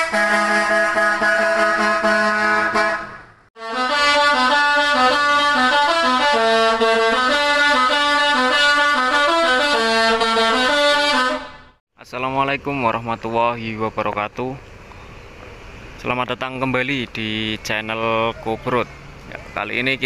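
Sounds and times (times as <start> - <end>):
multi-tone bus horn melody: 0.0 - 11.8.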